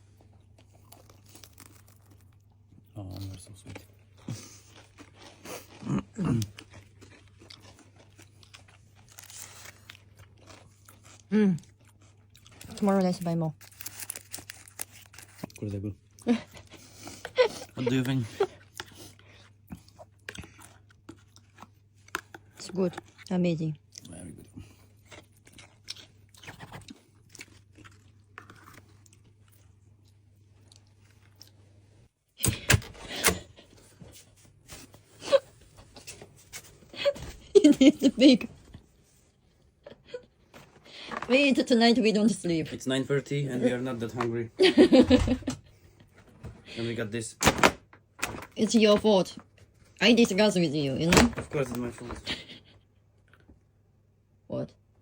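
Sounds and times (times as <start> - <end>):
chewing crisp pastry: 0.0 - 31.8
crunching crispy snack: 0.8 - 2.4, 13.5 - 15.7.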